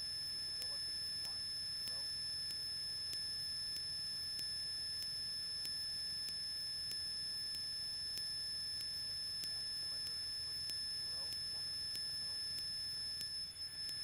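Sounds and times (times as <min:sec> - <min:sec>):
high-pitched electrical tones: 0:00.0 - 0:14.0.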